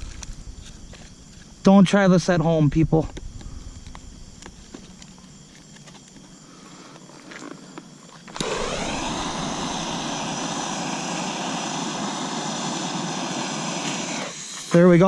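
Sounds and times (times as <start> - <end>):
firework fountain hissing sparks: 8.3 - 15.0.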